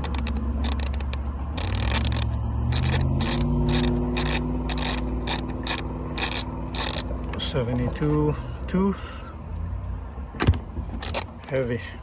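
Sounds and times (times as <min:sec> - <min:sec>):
ratchet pawl clicking: 0:00.0 - 0:07.1, 0:11.0 - 0:11.3.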